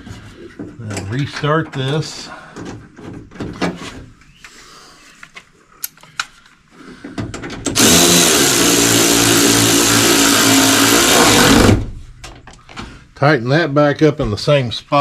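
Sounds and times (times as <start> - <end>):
power drill-driver running: 7.8 - 11.8.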